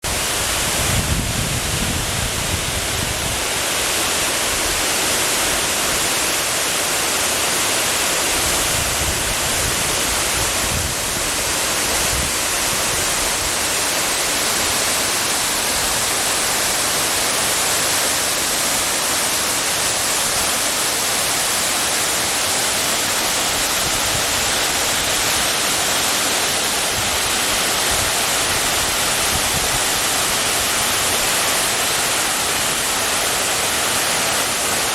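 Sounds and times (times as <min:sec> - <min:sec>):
waterfall rushing: 0:00.0 - 0:34.9.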